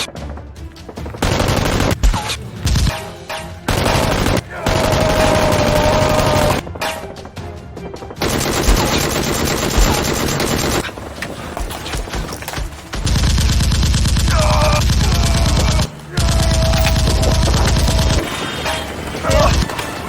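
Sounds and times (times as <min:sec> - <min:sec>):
rapid automatic gunfire: 0:01.2 - 0:02.9, 0:03.7 - 0:06.6, 0:08.2 - 0:10.9, 0:13.0 - 0:18.4.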